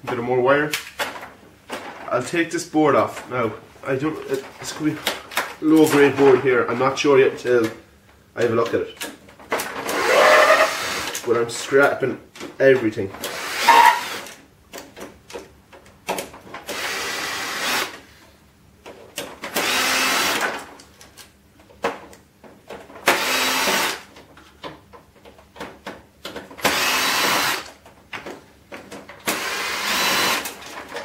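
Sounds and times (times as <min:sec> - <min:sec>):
power drill running: 0:09.8 - 0:11.2, 0:13.2 - 0:14.3, 0:16.7 - 0:18.0, 0:19.5 - 0:20.6, 0:23.1 - 0:24.0, 0:26.6 - 0:27.7, 0:29.2 - 0:30.6
clicks and knocks of handling: 0:14.7 - 0:16.6, 0:20.8 - 0:23.0, 0:24.1 - 0:26.6, 0:27.7 - 0:29.3.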